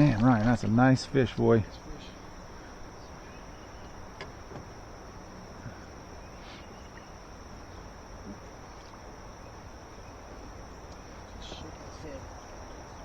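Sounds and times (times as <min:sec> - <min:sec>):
high-pitched insect chorus: 0:00.0 - 0:13.0
soft outdoor background hiss: 0:00.0 - 0:13.0
faint ticks: 0:10.9 - 0:11.1.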